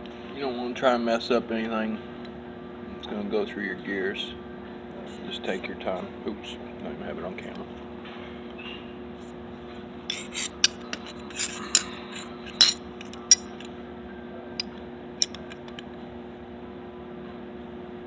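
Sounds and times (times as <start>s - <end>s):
light metallic taps: 10.1s - 13.7s, 15.2s - 15.8s
metal scraping: 10.1s - 13.7s, 15.2s - 15.8s.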